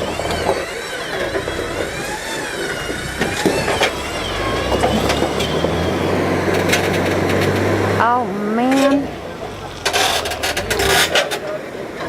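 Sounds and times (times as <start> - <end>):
wavering whine: 0.0 - 11.5
vehicle engine running: 0.0 - 12.0.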